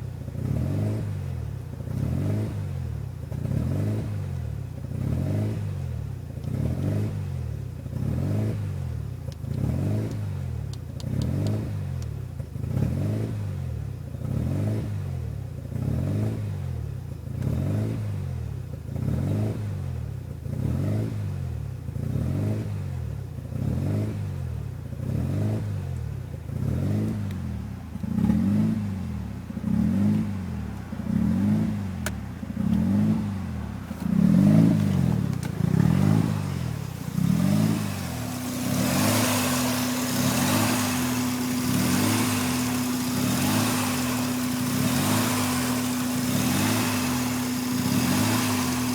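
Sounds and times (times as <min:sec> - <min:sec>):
rotary engine idling roughly: 0:33.5 - 0:48.9.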